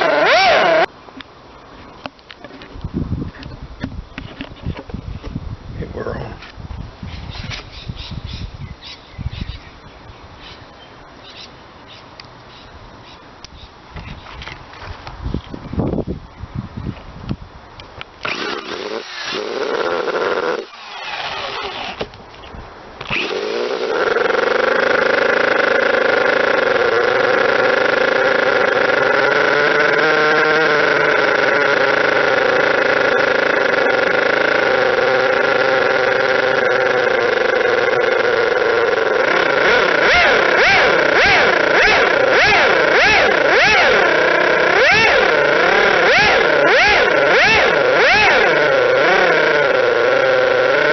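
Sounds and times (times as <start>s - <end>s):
model nitro engine running: 0.0s - 0.9s, 18.2s - 22.1s, 23.0s - 50.9s.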